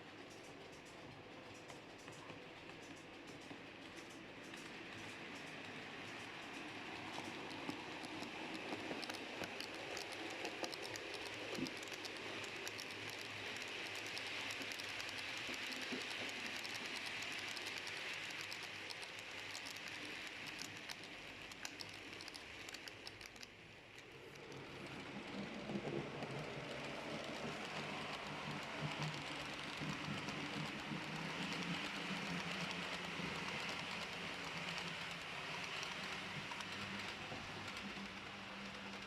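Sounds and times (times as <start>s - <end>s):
model train running hiss: 0.0s - 39.0s
wheels clicking on rails: 0.0s - 39.0s.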